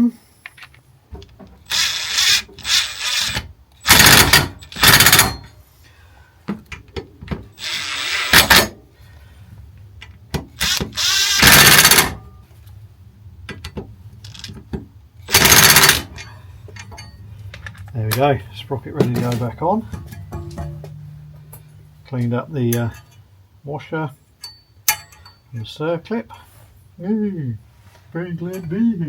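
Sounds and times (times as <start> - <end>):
power tool bursts: 1.6 - 5.5, 7.6 - 8.8, 10.6 - 12.2, 15.3 - 16.2.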